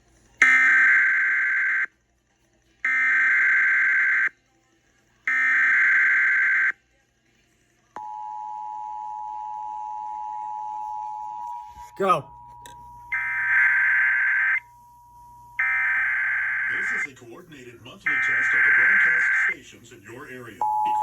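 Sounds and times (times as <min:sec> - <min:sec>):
two-tone attention signal: 0:18.1 - 0:19.5.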